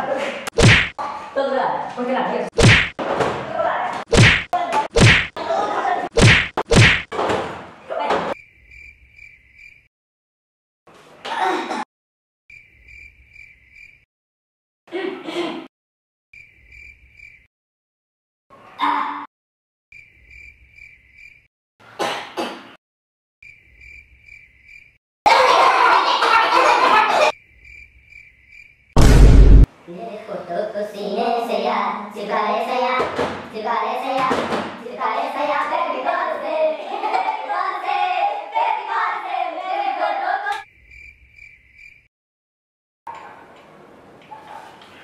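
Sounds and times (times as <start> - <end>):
cricket chirping: 8.4 - 9.9, 12.5 - 14.1, 16.4 - 17.5, 19.9 - 21.5, 23.4 - 25.0, 27.3 - 29.0, 40.6 - 42.1
bursts of noise: 29.0 - 29.7
low hum: 29.0 - 29.7
voices singing or chattering: 35.0 - 40.6.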